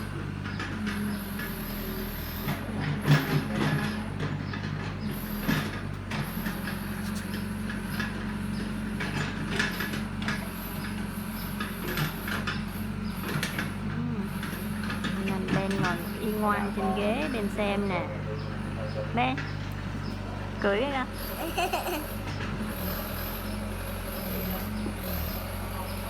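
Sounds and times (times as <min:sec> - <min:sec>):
toy excavator motor hum: 0:20.8 - 0:26.0.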